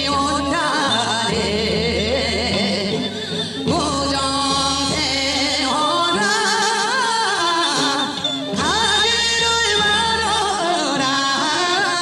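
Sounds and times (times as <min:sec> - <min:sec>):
folk singing with vibrato: 0:00.0 - 0:12.0.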